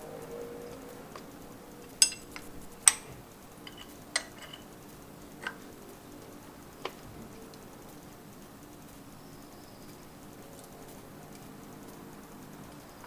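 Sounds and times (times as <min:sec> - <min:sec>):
hand tools clinking on metal: 0:01.8 - 0:04.8, 0:05.4 - 0:05.7.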